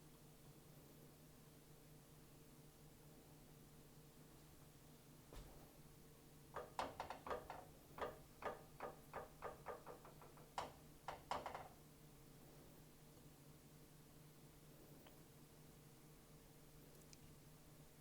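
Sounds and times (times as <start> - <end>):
utensil knocking against cookware: 6.6 - 11.8.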